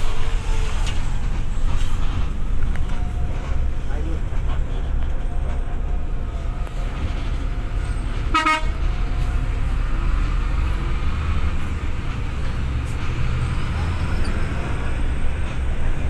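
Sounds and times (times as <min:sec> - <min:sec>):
bus engine rumbling: 0:00.0 - 0:16.0
short horn toot: 0:08.3 - 0:08.8.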